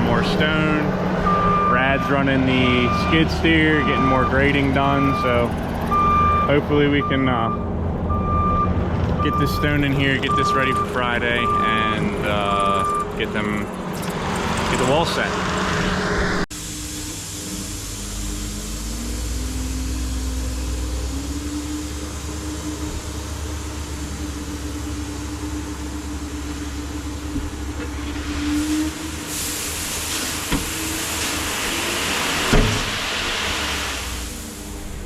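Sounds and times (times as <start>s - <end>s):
skid steer engine running: 0.0s - 35.0s
hiss: 28.1s - 34.8s.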